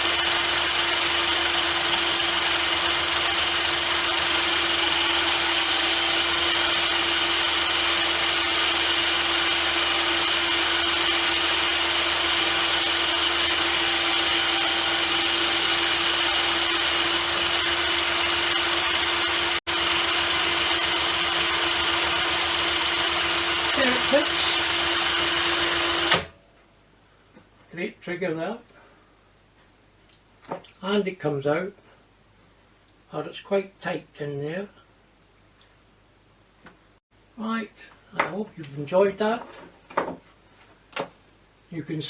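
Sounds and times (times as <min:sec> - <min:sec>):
electric grinder grinding steel: 0:00.0 - 0:26.3.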